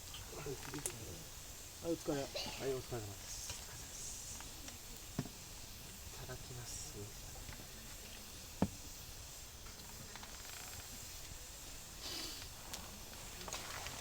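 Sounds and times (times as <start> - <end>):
steady background hiss: 0.0 - 14.0.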